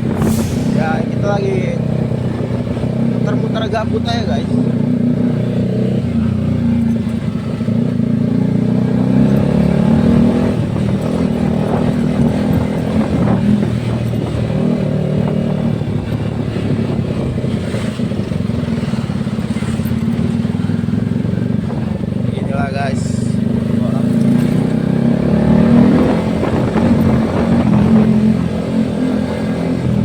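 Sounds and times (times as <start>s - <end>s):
motorcycle engine running: 0.0s - 30.0s.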